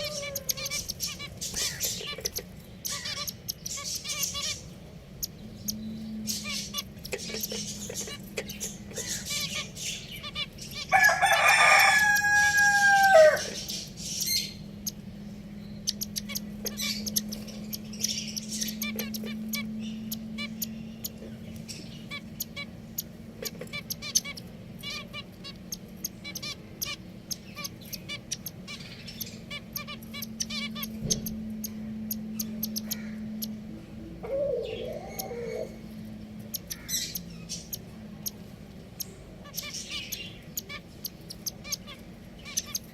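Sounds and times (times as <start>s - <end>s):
rooster crowing: 0.0s - 0.6s, 10.9s - 13.7s
finches chirping: 0.0s - 42.9s
low steady hum: 0.0s - 42.9s.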